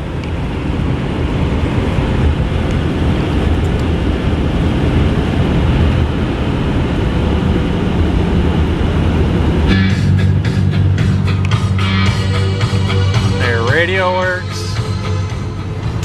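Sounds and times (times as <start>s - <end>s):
tyre and wind noise: 0.0s - 12.0s
engine drone: 0.0s - 16.0s.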